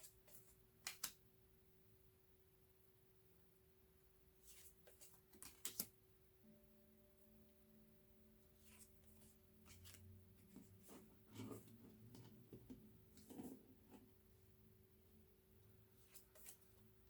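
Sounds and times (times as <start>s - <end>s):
cards being handled: 0.0s - 1.2s, 4.4s - 5.9s, 16.0s - 16.8s
low steady hum: 5.9s - 17.0s.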